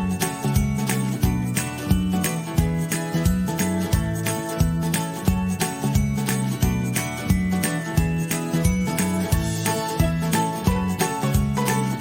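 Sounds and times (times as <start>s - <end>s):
background music with held notes: 0.0s - 12.0s.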